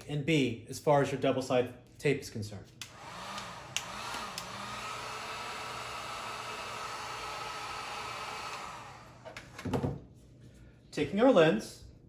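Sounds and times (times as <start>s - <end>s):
heat gun blowing: 2.8s - 9.4s.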